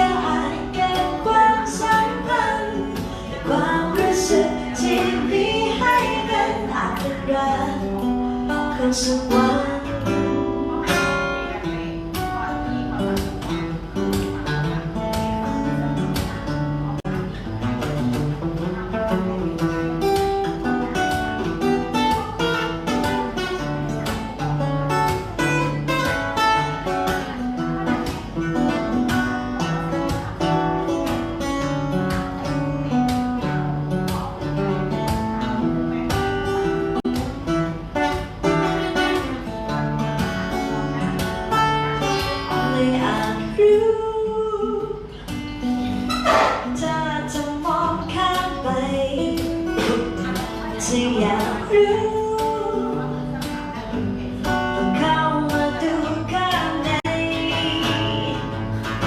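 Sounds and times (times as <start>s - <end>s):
acoustic guitar playing: 0.0s - 59.0s.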